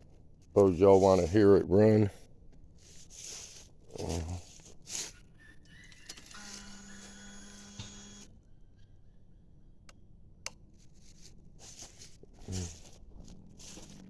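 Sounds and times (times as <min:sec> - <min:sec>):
fuel pump electric whine: 0:05.4 - 0:08.9.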